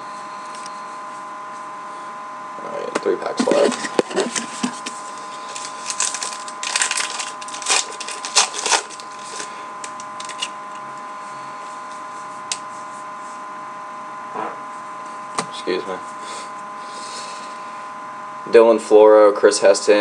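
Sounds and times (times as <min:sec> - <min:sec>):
steady hum: 0:00.0 - 0:20.0
card pack tearing and crinkling: 0:03.4 - 0:10.6
cards shuffling: 0:05.5 - 0:09.5.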